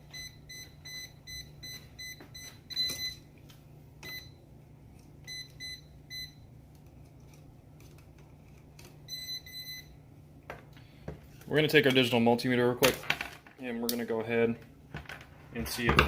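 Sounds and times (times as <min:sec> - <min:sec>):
voltage tester beeping: 0:05.3 - 0:06.4, 0:09.1 - 0:10.0.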